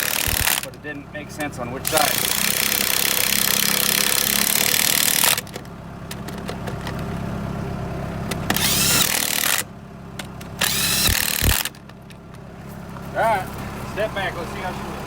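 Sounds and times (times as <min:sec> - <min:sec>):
impact wrench hammering: 0:00.0 - 0:00.8, 0:01.9 - 0:05.6, 0:08.3 - 0:12.0
steady low hum: 0:00.0 - 0:15.0.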